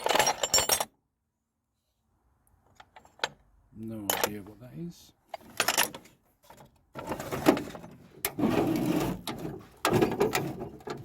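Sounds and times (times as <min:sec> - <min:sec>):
toolbox drawers sliding and rattling: 0:07.0 - 0:11.0.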